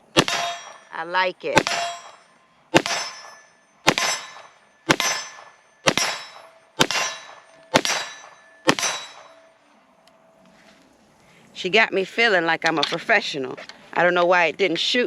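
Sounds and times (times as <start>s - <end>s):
pistol shots with ringing tail: 0.0s - 0.9s, 1.6s - 9.5s.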